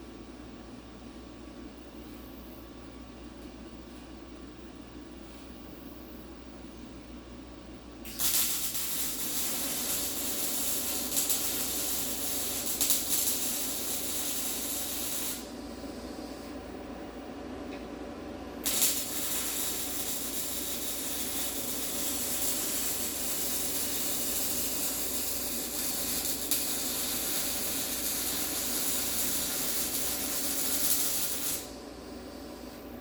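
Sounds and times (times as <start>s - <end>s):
steady low hum: 0.0s - 33.0s
welding arc hissing: 8.0s - 15.5s, 18.6s - 31.8s.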